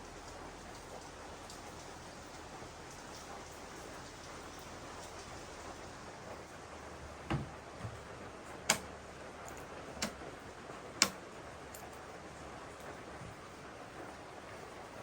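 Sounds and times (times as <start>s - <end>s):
sharp clicks or knocks: 8.7s - 8.9s.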